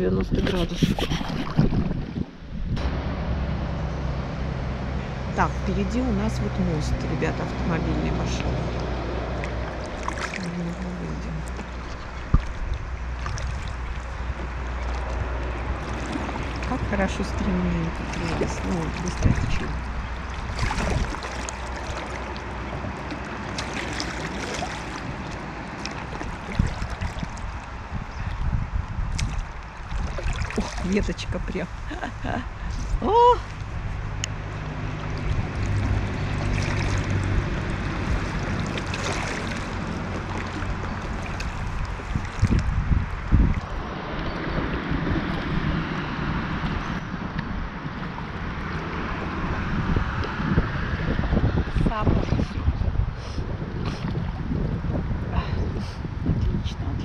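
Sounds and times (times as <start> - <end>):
river current rushing and gurgling: 0.0 - 57.0
wind buffeting microphone: 0.0 - 57.0
water splashes and drips: 5.9 - 31.6, 33.1 - 50.6.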